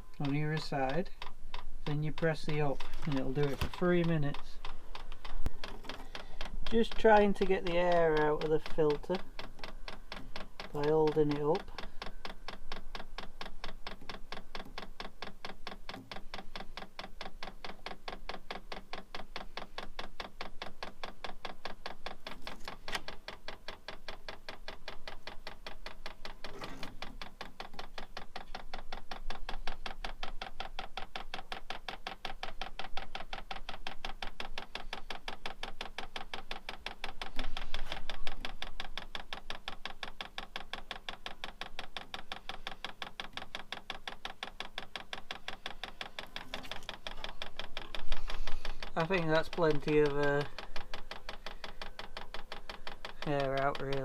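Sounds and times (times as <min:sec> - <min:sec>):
fuel pump clicking: 0:00.0 - 0:54.0.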